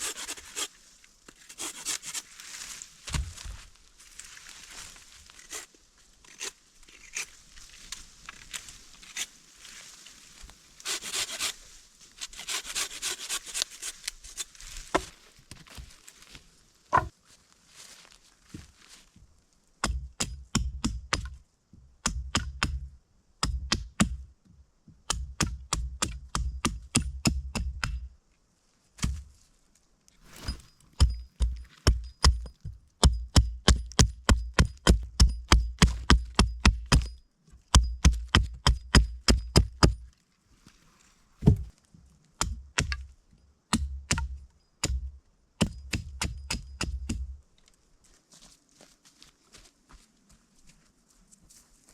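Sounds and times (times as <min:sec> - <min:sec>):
rustling and crinkling: 0:00.0 - 0:19.7, 0:28.3 - 0:32.9, 0:40.0 - 0:42.4, 0:47.4 - 0:51.9
rapid knocks on wood: 0:41.4 - 0:41.7.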